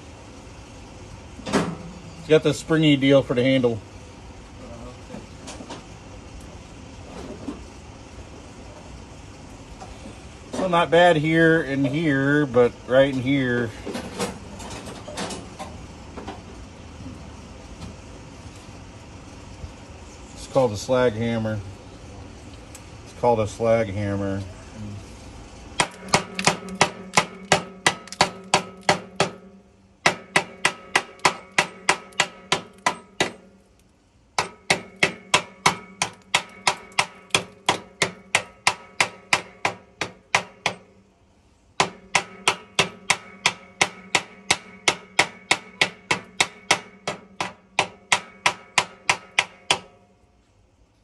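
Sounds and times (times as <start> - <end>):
slag hammer striking metal frame: 25.8 - 33.6, 34.4 - 41.0, 41.8 - 50.1.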